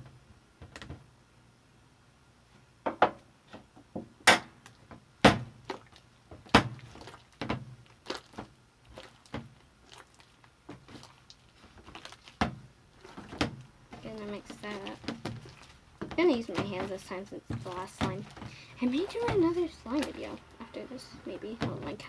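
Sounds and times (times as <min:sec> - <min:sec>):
hard objects thunking and clicking: 0:06.3 - 0:09.6, 0:10.7 - 0:20.6, 0:21.5 - 0:22.0.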